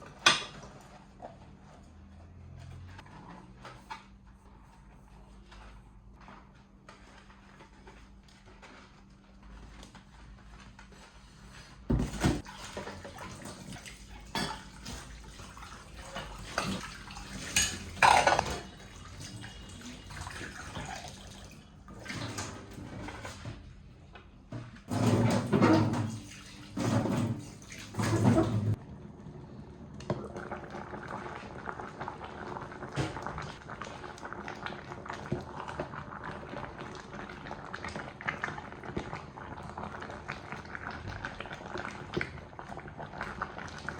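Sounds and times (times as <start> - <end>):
pots and dishes clattering: 0.1 - 0.8, 11.9 - 21.1, 24.9 - 28.8.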